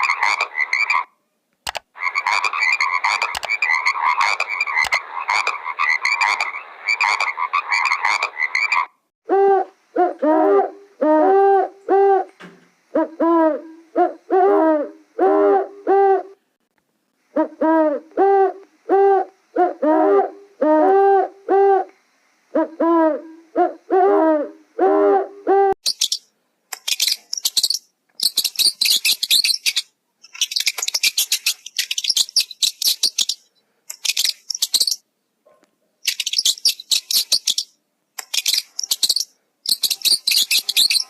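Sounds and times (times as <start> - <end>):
rapid croaking chorus: 0.0 - 1.1, 1.9 - 9.0
short repeated hooting calls: 17.3 - 25.8.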